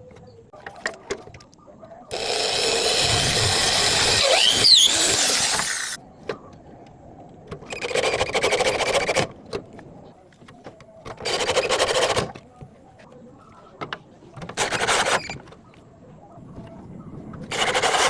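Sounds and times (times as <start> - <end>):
power tool whining: 2.1 - 6.0.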